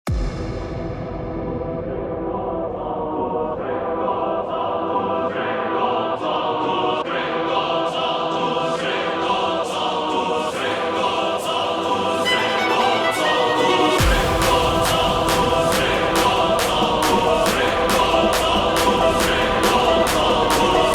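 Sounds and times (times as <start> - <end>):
deep bass hit: 0.1 - 3.6, 14.0 - 20.9
electronic music with choir-like chords: 0.1 - 20.9.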